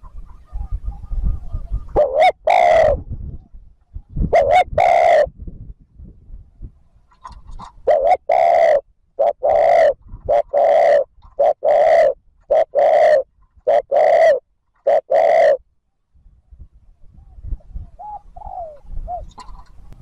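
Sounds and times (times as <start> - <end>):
dove cooing: 0.0 - 3.1, 4.2 - 5.3, 7.2 - 15.6, 17.8 - 20.0.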